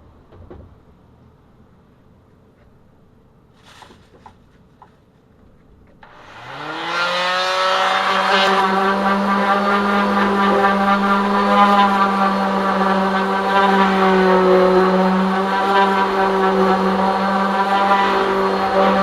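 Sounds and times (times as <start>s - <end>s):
electric sander whining on wood: 6.0s - 19.0s.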